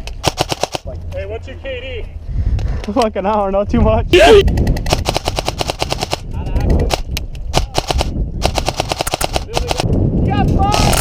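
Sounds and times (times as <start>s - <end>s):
airsoft rifle full-auto bursts: 7.8s - 9.8s.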